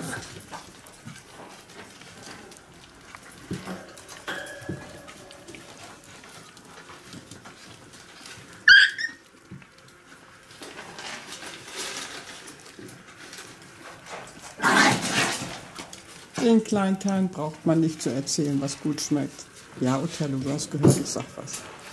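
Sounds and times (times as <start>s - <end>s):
rustling: 0.0s - 21.9s
puppy high-pitched squeal: 8.6s - 9.2s.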